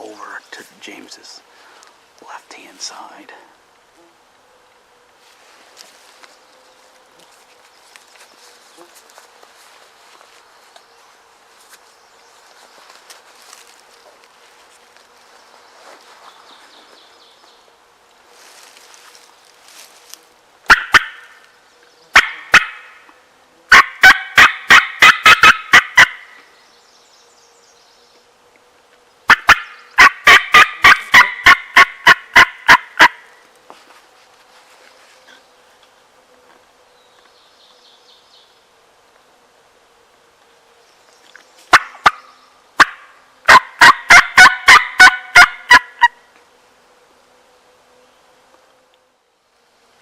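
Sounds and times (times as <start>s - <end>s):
wild turkey yelping: 20.7s - 21.4s, 22.2s - 22.9s, 23.7s - 26.4s, 29.3s - 33.2s, 41.7s - 46.2s.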